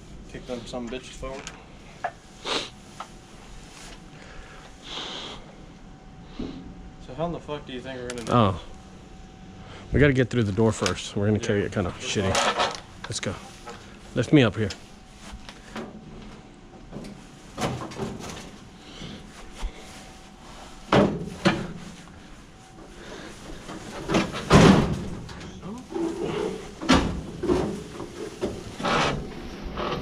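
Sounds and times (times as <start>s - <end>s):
heavy appliance knocking and thumping: 23.8s - 25.4s, 26.8s - 29.3s.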